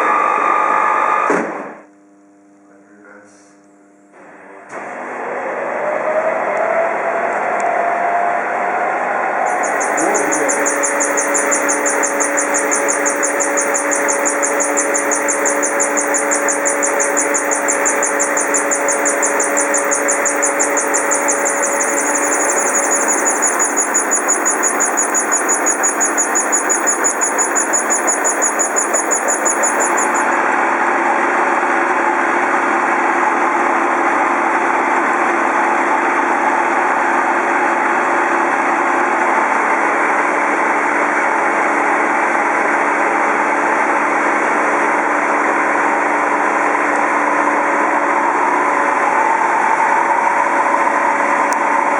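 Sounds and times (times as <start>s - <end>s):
fast-pulsing high whine: 9.5s - 30.4s.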